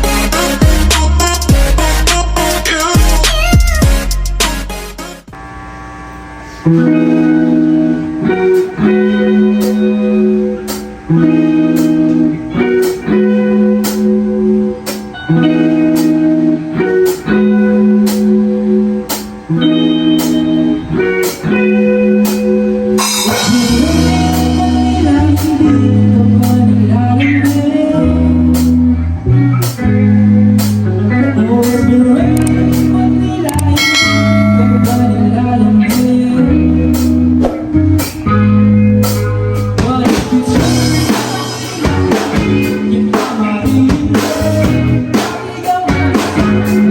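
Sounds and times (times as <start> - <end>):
steady drum beat: 0.0 - 5.4, 22.3 - 25.7, 39.0 - 46.9
bass guitar: 0.0 - 46.9
guitar chords: 0.0 - 46.9.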